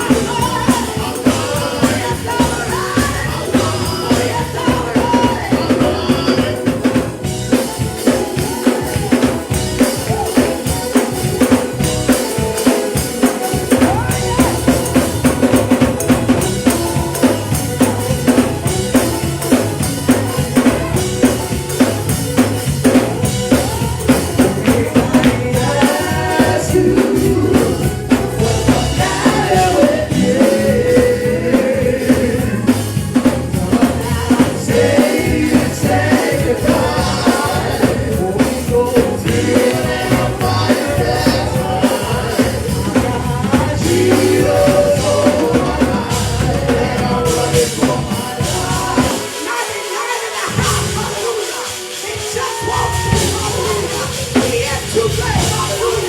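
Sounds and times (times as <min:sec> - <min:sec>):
snare and bass drum beat: 0:00.0 - 0:49.6
gospel band playing: 0:00.0 - 0:56.0.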